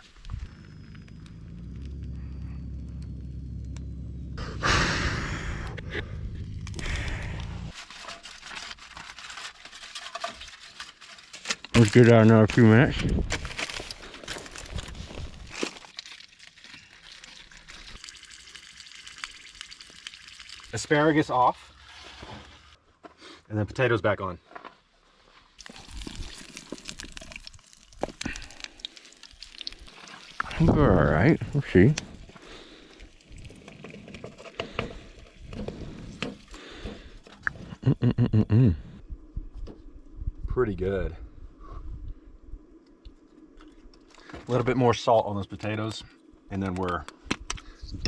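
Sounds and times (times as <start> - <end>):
food sizzling over log fire: 6.5 - 21.9, 25.6 - 38.4.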